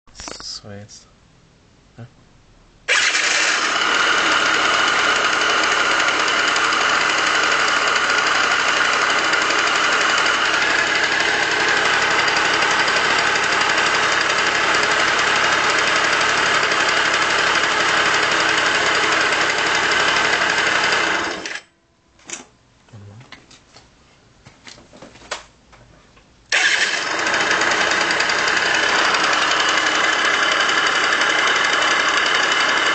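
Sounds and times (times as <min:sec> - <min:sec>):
scooter engine rattling: 0:02.9 - 0:21.6, 0:26.5 - 0:32.9.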